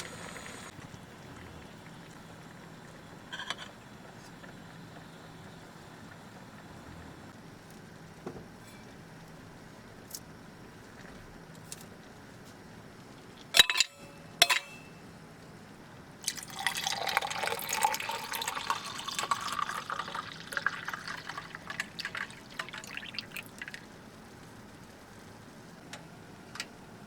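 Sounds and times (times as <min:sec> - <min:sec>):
liquid dripping: 0:16.2 - 0:23.8
liquid pouring into container: 0:16.2 - 0:23.9.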